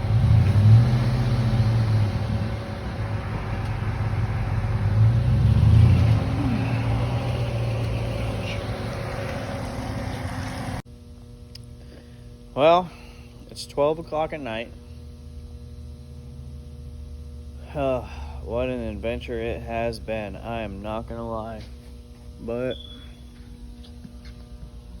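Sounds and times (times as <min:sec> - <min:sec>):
pickup truck engine revving: 0:00.0 - 0:10.8
low steady hum: 0:00.0 - 0:25.0.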